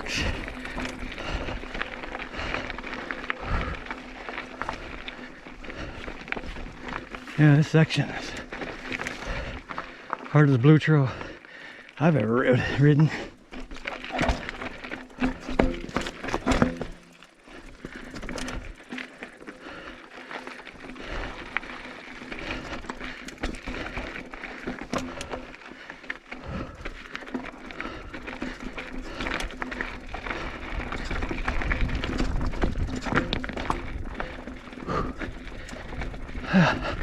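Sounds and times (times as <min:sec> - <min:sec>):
bike tyres knocking on rocks: 0:13.5 - 0:17.2.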